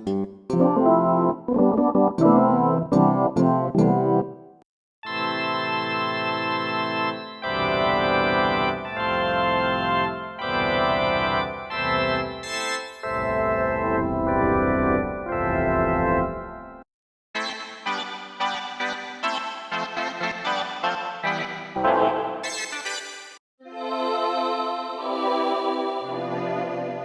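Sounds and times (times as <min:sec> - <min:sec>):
synthesizer chords: 0:17.4 - 0:23.1.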